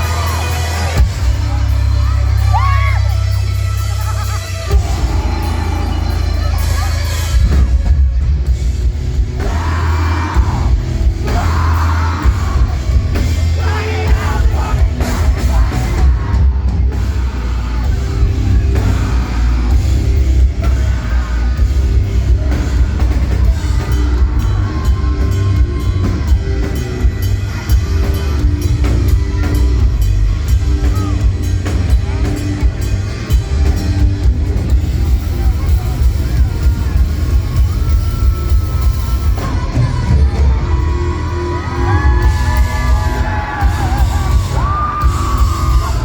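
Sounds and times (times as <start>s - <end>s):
live rock band: 0.0s - 46.0s
shouted and sung vocals: 9.1s - 29.8s, 37.0s - 46.0s.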